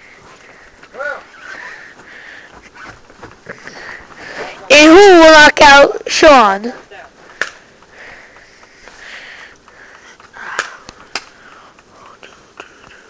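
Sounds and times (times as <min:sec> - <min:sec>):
soft breathing at microphone: 0:00.0 - 0:04.7, 0:07.2 - 0:13.0
sharp clicks: 0:07.3 - 0:13.0.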